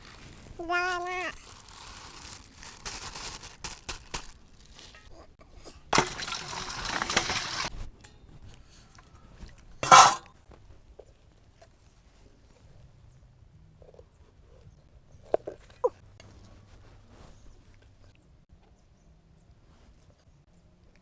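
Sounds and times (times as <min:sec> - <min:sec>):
rough scraping or rustling: 0:05.9 - 0:07.8, 0:09.8 - 0:10.3
kitchenware clinks and knocks: 0:06.0 - 0:07.7, 0:09.8 - 0:10.3.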